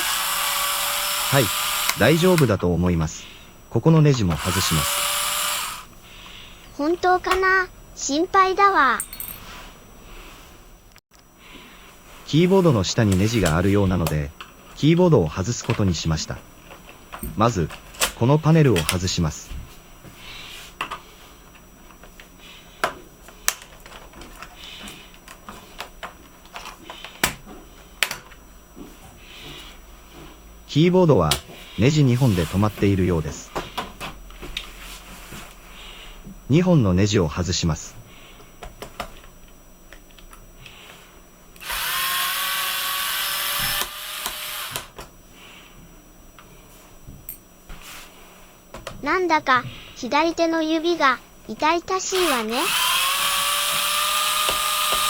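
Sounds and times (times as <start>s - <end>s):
electric screwdriver running: 0.0s - 2.6s, 4.3s - 5.9s, 41.6s - 45.0s, 52.1s - 55.0s.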